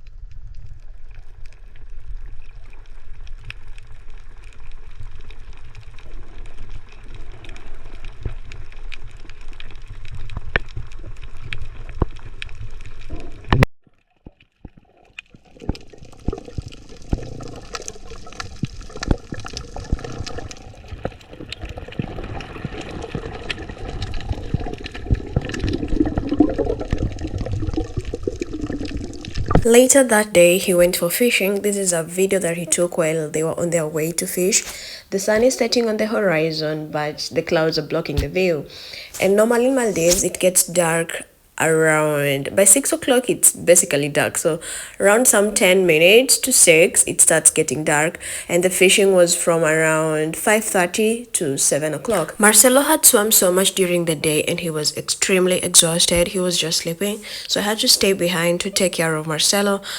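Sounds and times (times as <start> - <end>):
underwater clicks and crackles: 0.0 - 36.2
underwater rumble: 0.0 - 40.5
watery wash: 14.6 - 59.9.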